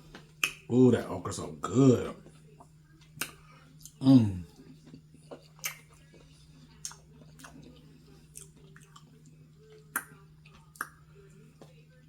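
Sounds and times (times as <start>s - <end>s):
faint low hum: 0.0s - 12.0s
person chewing with wet smacks: 0.1s - 0.7s, 2.2s - 11.8s.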